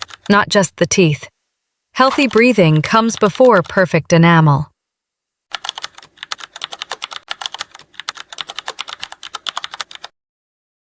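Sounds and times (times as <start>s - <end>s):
keyboard typing: 0.0s - 0.5s, 2.0s - 4.0s, 5.5s - 10.1s.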